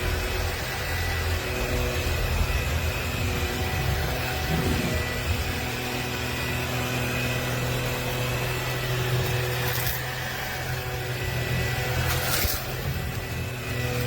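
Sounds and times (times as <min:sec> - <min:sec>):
motor humming: 0:00.0 - 0:14.0.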